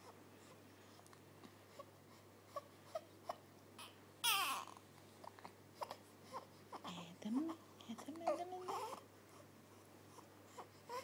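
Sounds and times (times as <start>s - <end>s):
baby whimpering: 1.7s - 7.6s, 8.2s - 9.5s, 10.1s - 11.0s
baby crying: 2.6s - 4.8s, 8.3s - 9.0s, 10.6s - 11.0s.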